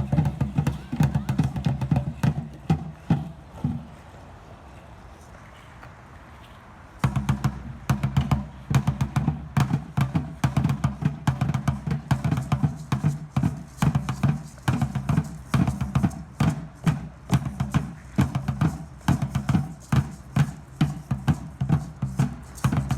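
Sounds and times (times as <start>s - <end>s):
deep drum beating: 7.0s - 20.2s.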